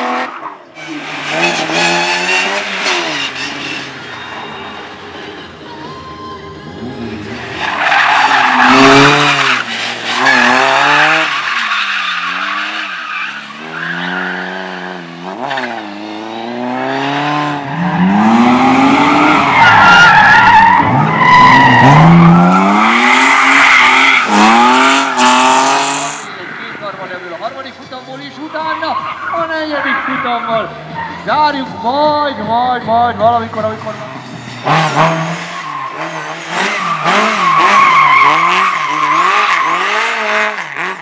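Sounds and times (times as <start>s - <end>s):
race car engine revving: 0.0s - 4.6s, 6.8s - 26.3s, 33.2s - 41.0s.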